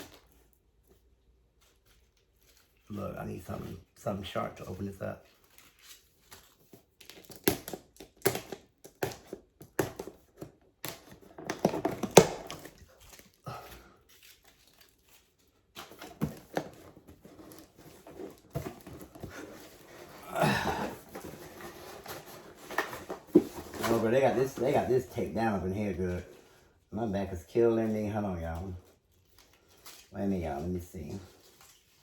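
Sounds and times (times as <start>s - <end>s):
tape crinkling and tearing: 1.5s - 26.3s, 28.0s - 32.0s
knocks and clicks on package: 7.2s - 12.8s.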